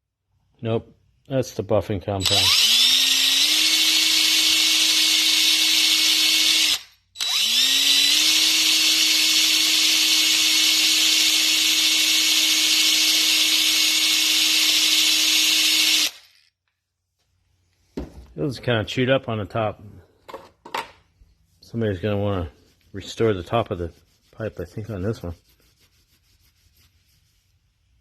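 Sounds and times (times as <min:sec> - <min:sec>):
electric drill buffing: 0:02.2 - 0:16.5.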